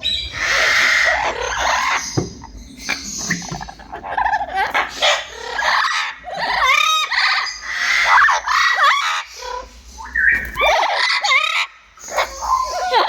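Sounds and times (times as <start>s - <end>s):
parrot squawking: 0.0s - 13.0s.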